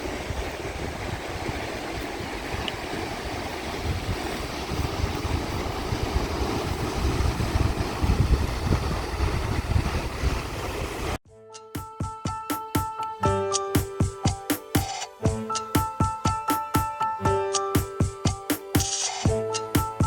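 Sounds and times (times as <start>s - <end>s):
wind gusting on microphone: 0.0s - 11.2s
steady rushing noise: 3.1s - 11.2s.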